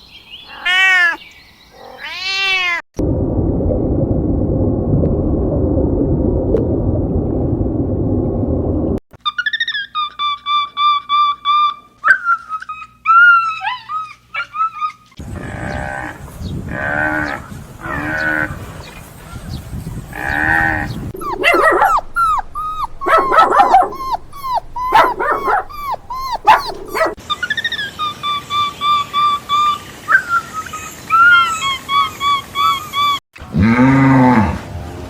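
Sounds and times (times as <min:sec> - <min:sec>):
long animal calls: 0:20.2 - 0:27.2
high whistled animal chirps: 0:21.2 - 0:27.2
short yelping calls: 0:21.2 - 0:27.2.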